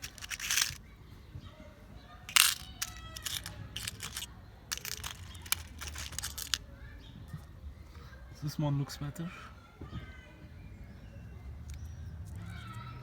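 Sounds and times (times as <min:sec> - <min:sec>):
metal washers clinking and rattling: 0:00.0 - 0:00.8, 0:02.3 - 0:06.6.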